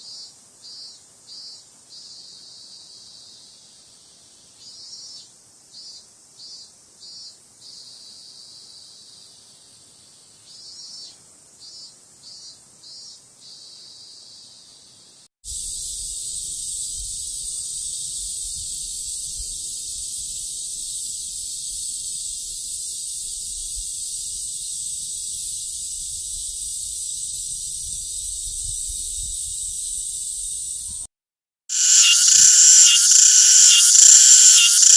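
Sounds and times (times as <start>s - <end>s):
cicada drone: 15.5s - 31.1s, 31.7s - 34.9s
cicadas pulsing calls: 15.5s - 31.1s, 31.7s - 34.9s.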